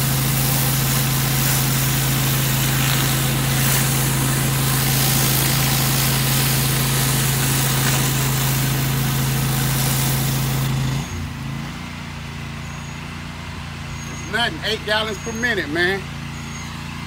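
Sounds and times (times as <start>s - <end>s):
water spray hissing: 0.0s - 11.3s
engine and pump hum: 0.0s - 17.0s.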